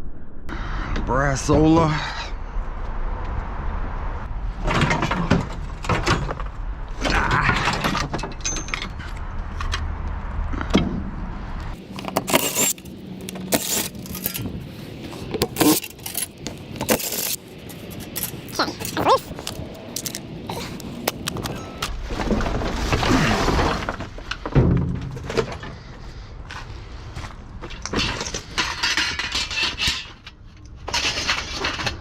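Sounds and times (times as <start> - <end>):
loose metal clanking and rattling: 4.6 - 9.9, 27.6 - 32.0.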